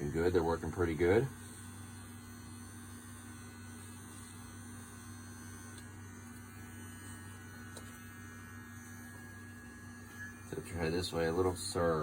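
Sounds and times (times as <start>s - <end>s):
battery trimmer humming: 0.0s - 12.0s.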